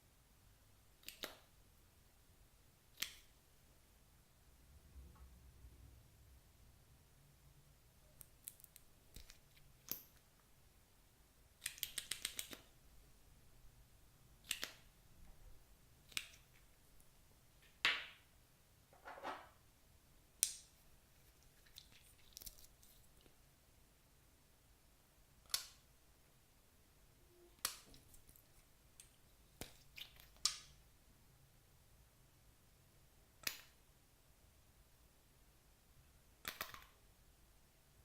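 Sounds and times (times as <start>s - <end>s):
sharp clicks from handling makeup: 11.6s - 12.7s.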